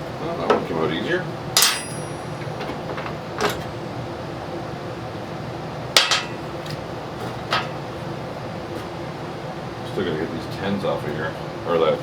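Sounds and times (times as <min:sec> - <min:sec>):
steady background hum: 0:00.0 - 0:12.0
wrench and bolts clinking on metal: 0:01.6 - 0:02.4.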